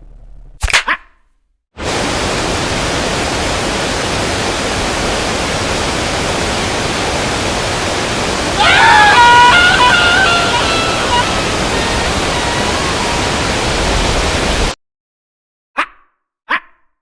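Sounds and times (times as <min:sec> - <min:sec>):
static hiss: 0:01.8 - 0:14.8.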